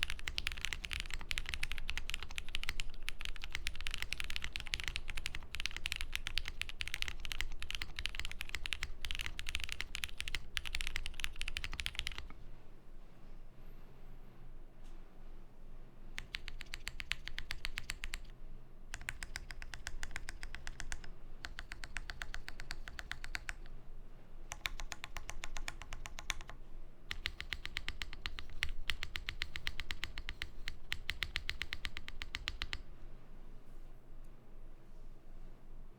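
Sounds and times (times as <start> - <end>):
mechanical keyboard typing: 0.0 - 12.3, 16.2 - 18.3, 18.9 - 23.7, 24.5 - 32.9.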